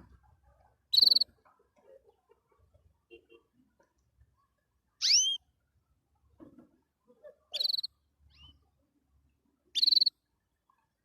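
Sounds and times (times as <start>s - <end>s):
canary calling in buzzy bursts: 5.0s - 5.4s, 9.8s - 10.1s
faint lower chirps: 5.0s - 5.4s.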